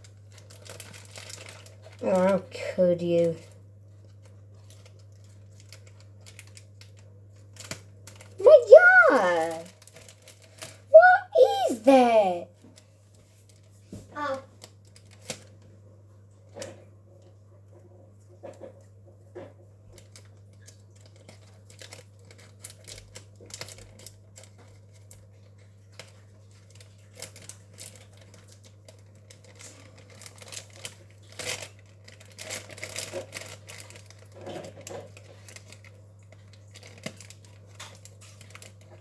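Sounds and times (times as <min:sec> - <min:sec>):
packaging crinkling and clicking: 0:00.0 - 0:02.0, 0:04.0 - 0:08.4, 0:09.7 - 0:10.8, 0:14.6 - 0:15.6, 0:20.0 - 0:39.0.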